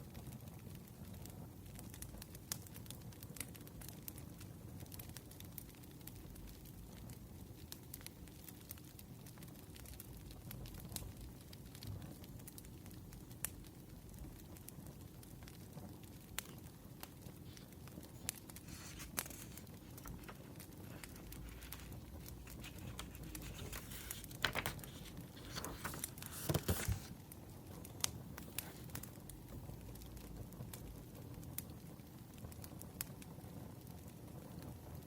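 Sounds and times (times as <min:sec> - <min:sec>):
firewood crackling and popping: 0:00.1 - 0:35.0
paper rustling: 0:17.5 - 0:27.2, 0:28.4 - 0:29.1.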